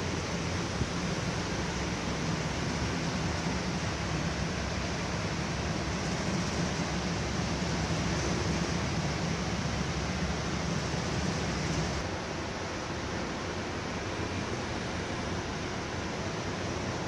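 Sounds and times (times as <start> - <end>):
heavy rain: 0.0 - 12.6
wind: 0.0 - 17.0.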